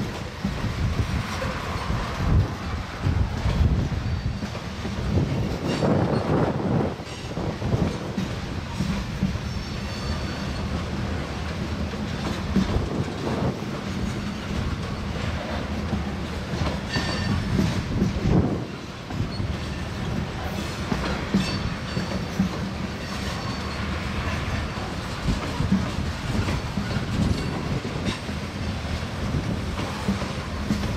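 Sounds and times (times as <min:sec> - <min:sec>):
freight train rumble: 0:00.0 - 0:30.9
wheels clacking over rail joints: 0:00.0 - 0:30.9
high-pitched wheel squeal: 0:09.5 - 0:10.8.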